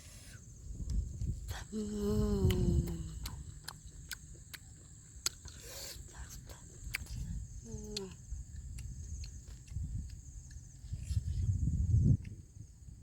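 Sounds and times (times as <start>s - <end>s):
high insect drone: 0.0s - 13.0s
chewing and lip smacking: 0.8s - 11.3s
person murmuring mm: 1.5s - 3.6s.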